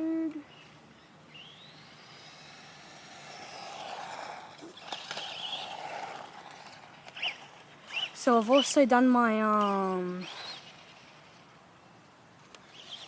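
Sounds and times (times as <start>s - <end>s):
toy car motor whining: 1.4s - 8.8s, 9.6s - 11.4s, 12.6s - 13.0s
rushing tyre noise: 1.8s - 8.0s.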